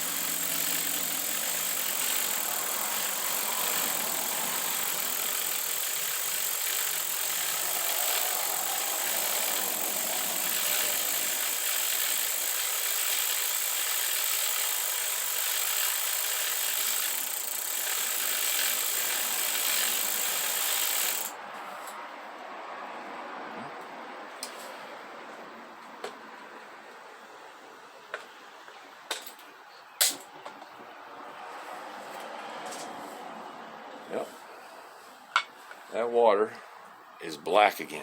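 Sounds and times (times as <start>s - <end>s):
bicycle chain scrubbing through brushes: 0.0s - 21.3s.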